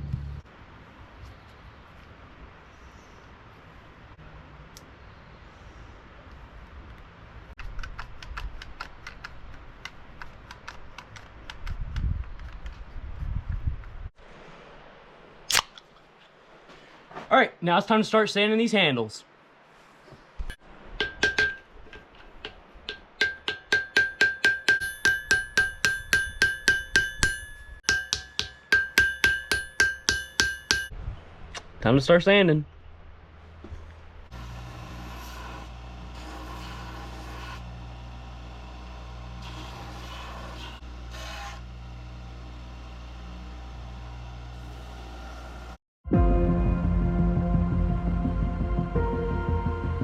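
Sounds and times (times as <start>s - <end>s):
hammer tapping on metal: 21.0s - 30.9s.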